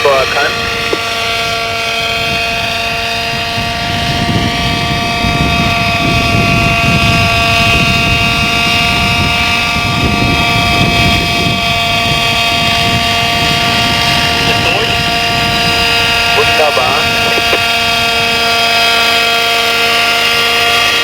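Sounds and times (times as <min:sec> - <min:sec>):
helicopter engine and rotor: 0:00.0 - 0:21.0
wind buffeting microphone: 0:00.6 - 0:16.4.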